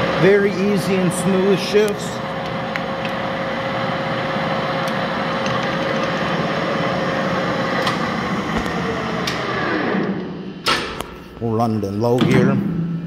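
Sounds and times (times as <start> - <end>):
lathe spindle whirring: 0.0 - 10.7.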